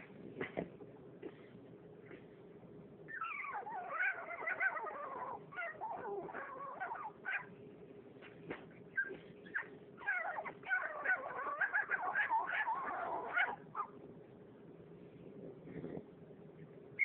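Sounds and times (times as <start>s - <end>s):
dog whining and whimpering: 3.1s - 7.5s, 8.9s - 13.9s.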